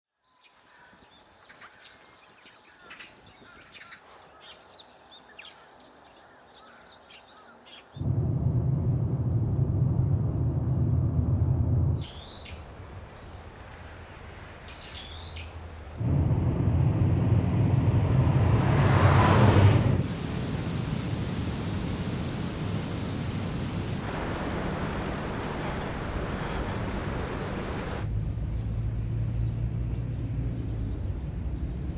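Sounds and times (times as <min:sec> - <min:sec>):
rising whoosh: 0:08.0 - 0:13.1, 0:15.9 - 0:28.1
loud low rumble: 0:08.0 - 0:14.1, 0:14.9 - 0:31.9
steady hiss: 0:08.1 - 0:28.1
birds chirping: 0:12.0 - 0:16.0, 0:20.0 - 0:31.9
downward-sweeping bird calls: 0:12.0 - 0:16.0.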